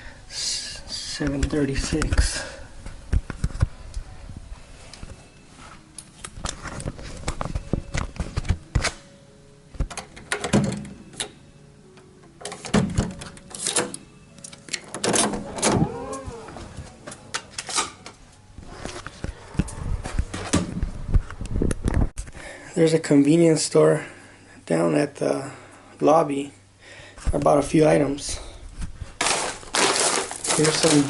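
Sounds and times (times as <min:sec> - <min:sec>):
brief wavering tone: 0:15.4 - 0:17.3.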